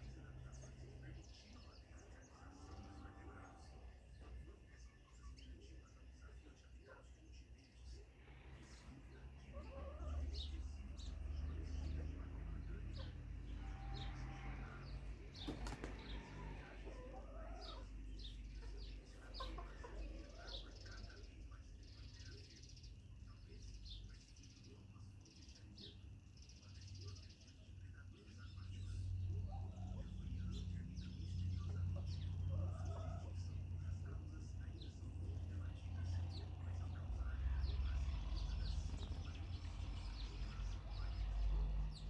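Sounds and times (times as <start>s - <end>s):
chickens clucking: 8.4s - 22.4s, 27.7s - 42.0s.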